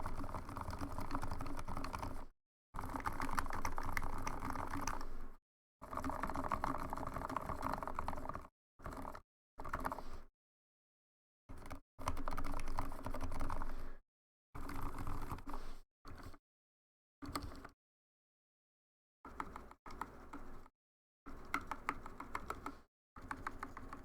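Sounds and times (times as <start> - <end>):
mechanical keyboard typing: 0.0 - 2.2, 2.8 - 5.1, 5.8 - 10.0, 11.6 - 13.7, 14.6 - 15.6, 21.3 - 24.0.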